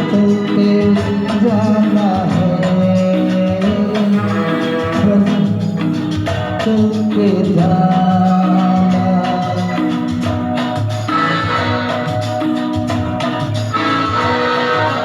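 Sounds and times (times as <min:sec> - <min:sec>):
song accompaniment with light percussion: 0:00.0 - 0:15.0
gliding vocal melody: 0:00.5 - 0:12.5.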